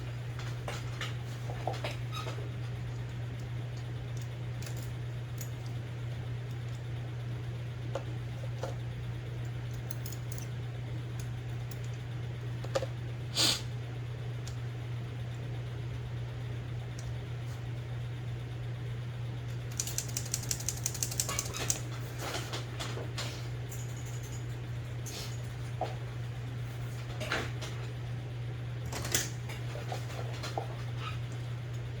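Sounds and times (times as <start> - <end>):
steady low hum: 0.0 - 32.0
typewriter mechanism clicking: 19.7 - 21.8.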